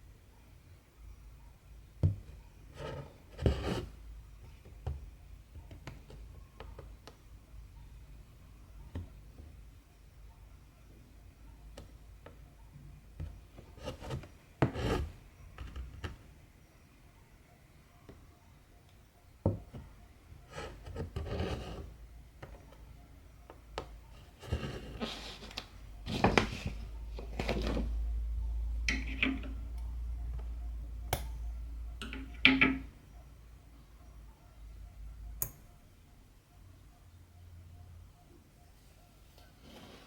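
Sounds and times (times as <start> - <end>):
thread rasping through fabric: 13.2 - 16.2.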